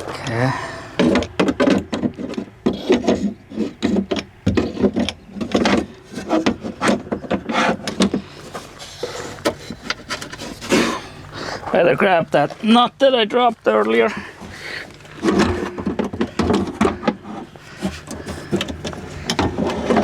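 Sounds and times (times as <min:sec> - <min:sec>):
metal parts clunking and scraping: 0:00.0 - 0:12.1, 0:14.9 - 0:20.0.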